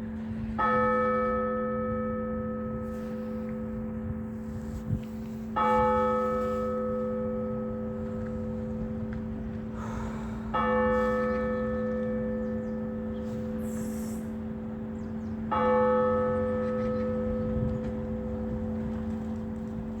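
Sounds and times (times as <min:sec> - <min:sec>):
hum of ringing bells: 0:00.1 - 0:04.6, 0:05.4 - 0:09.4, 0:10.4 - 0:13.6, 0:14.3 - 0:20.0
church bell strokes: 0:00.6 - 0:09.1, 0:10.5 - 0:13.7, 0:15.5 - 0:18.8.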